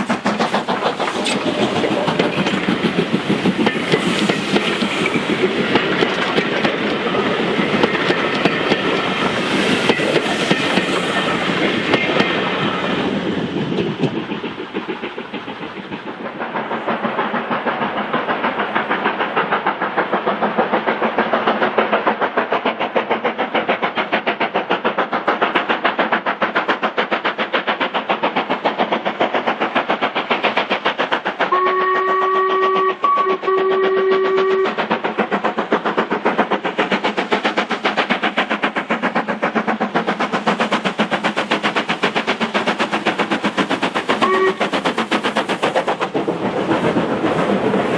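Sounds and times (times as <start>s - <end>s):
steam locomotive exhaust beats: 0.0s - 47.9s
steam whistle blasts: 31.5s - 34.8s, 44.2s - 44.7s.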